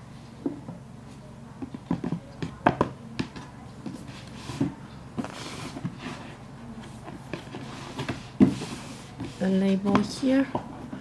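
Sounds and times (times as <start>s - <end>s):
knocks and taps on cardboard box: 7.3s - 10.7s.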